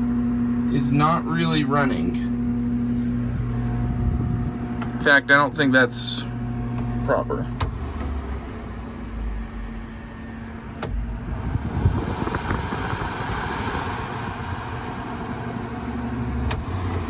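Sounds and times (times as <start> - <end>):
air conditioner humming: 0.0 - 17.0
rough whooshing noise: 10.9 - 16.4.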